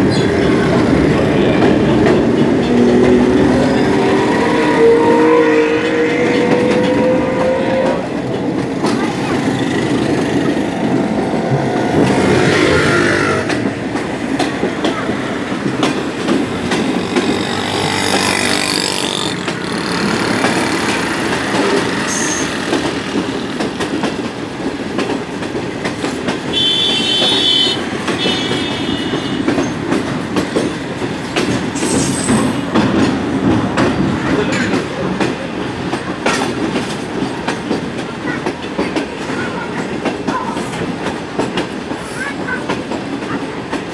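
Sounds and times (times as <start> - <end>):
train rumble with wheels clacking: 0.0 - 43.9
high-pitched wheel squeal: 22.0 - 22.7.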